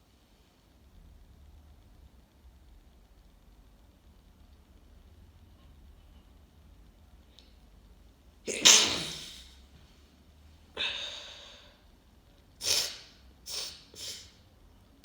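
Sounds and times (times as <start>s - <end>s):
person sneezing: 8.5s - 9.6s, 12.6s - 14.4s.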